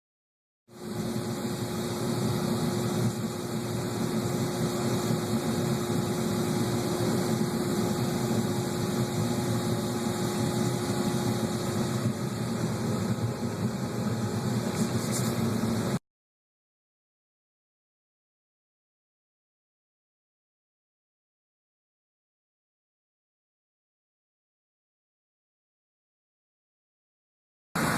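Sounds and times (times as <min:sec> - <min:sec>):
faint steady hum: 0:00.8 - 0:16.0.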